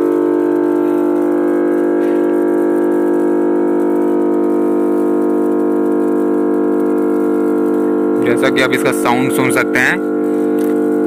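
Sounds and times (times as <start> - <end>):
transformer humming: 7.7 - 11.0.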